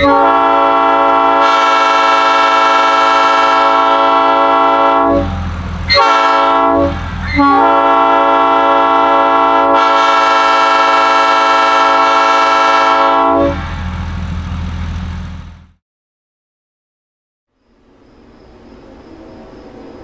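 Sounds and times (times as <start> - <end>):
train air horn: 0.0 - 14.1
low rumble: 5.1 - 6.0, 6.7 - 7.6, 13.4 - 15.8.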